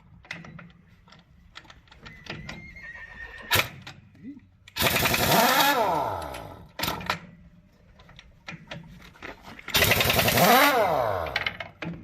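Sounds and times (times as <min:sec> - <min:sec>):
impact wrench rattling: 0:04.8 - 0:05.4, 0:08.4 - 0:12.0.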